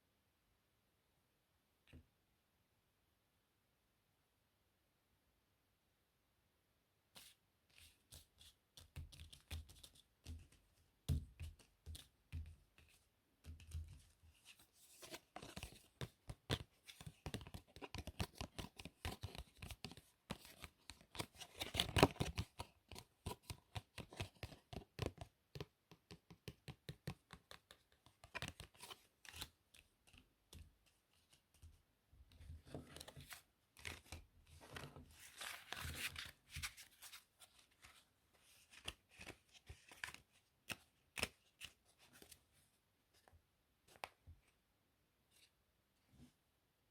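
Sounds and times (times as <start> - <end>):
playing cards shuffling: 32.7 - 42.4.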